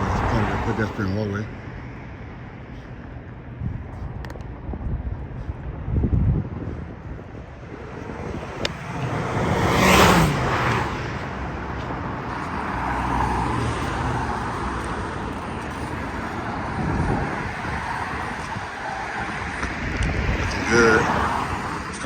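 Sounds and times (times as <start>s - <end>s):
street traffic: 0.0s - 22.0s
vehicle passing close: 6.8s - 22.0s.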